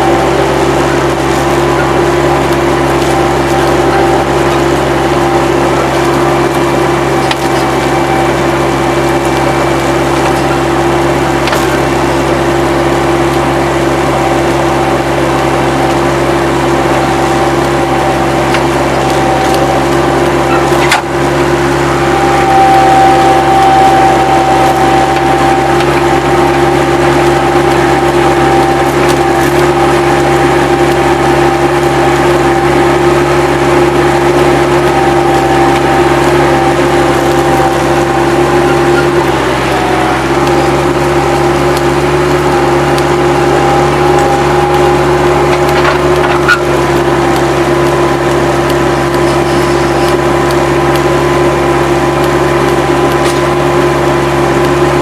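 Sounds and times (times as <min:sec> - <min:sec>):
high whine: 0:00.0 - 0:55.0
skid-steer loader running: 0:00.0 - 0:55.0.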